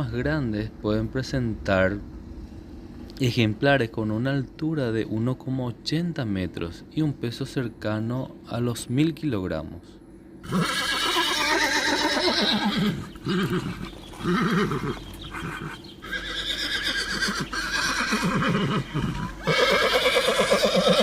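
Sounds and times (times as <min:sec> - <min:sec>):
horse whinnying: 0:10.4 - 0:21.0.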